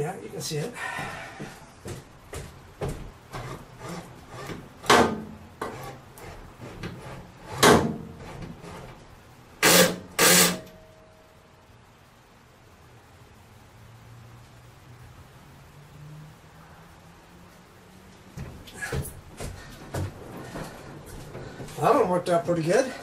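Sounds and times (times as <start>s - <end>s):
hand tools knocking and scraping: 1.9s - 9.0s
loud sharp knocks: 4.5s - 5.8s, 7.5s - 8.1s.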